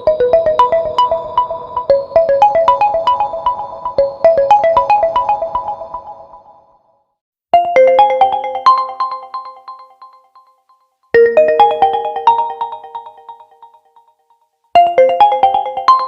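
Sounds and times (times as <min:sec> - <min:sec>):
phone ringtone melody: 0:07.6 - 0:10.5, 0:11.2 - 0:14.0, 0:14.8 - 0:16.0.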